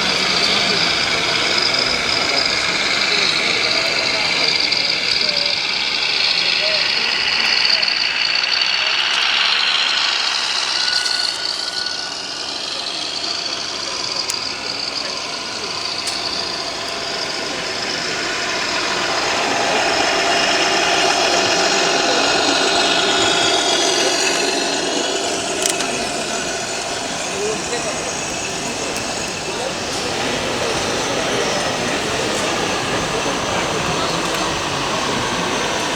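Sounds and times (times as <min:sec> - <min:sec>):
crowd chatter: 0:00.0 - 0:35.9
model truck engines: 0:00.0 - 0:35.9
sharp clicks: 0:00.1 - 0:27.3.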